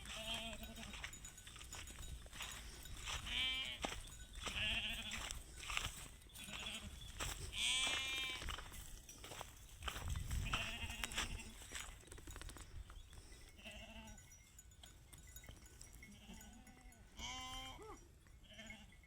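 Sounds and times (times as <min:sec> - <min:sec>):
goats bleating: 0:00.0 - 0:01.1, 0:03.1 - 0:05.4, 0:06.4 - 0:08.5, 0:10.4 - 0:11.6, 0:13.6 - 0:14.2, 0:16.1 - 0:19.0.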